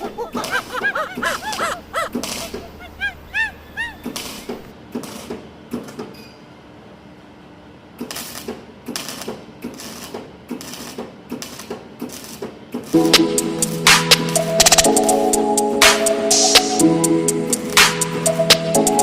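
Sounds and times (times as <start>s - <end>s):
music: 13.0s - 19.0s.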